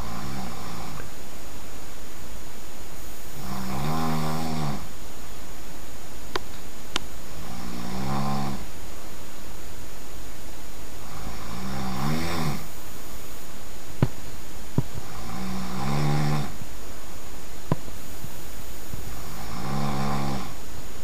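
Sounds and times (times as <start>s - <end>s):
person snoring loudly: 0.0s - 1.0s, 3.3s - 4.9s, 7.3s - 8.7s, 11.0s - 12.8s, 15.0s - 16.6s, 19.0s - 20.6s.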